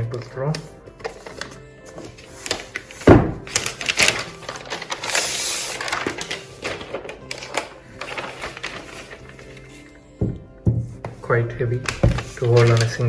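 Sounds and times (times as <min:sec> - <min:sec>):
packaging rustling: 0:00.1 - 0:10.0, 0:11.1 - 0:13.0
packaging clicks and knocks: 0:01.0 - 0:09.2, 0:11.8 - 0:13.0
packaging thump: 0:02.0 - 0:05.2, 0:11.8 - 0:13.0.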